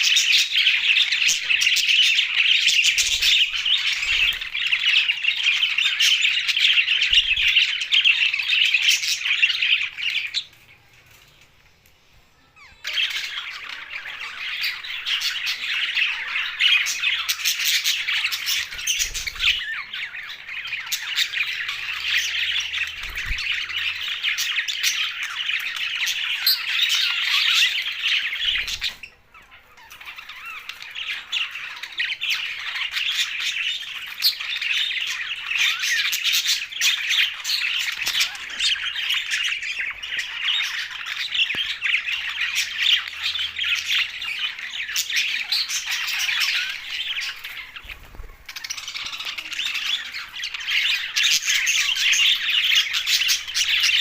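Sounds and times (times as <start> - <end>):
budgies chattering and squawking: 0.0 - 54.0.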